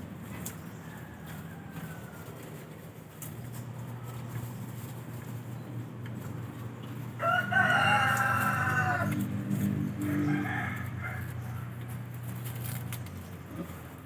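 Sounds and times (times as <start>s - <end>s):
rooster crowing: 0.8s - 2.6s, 7.1s - 12.1s.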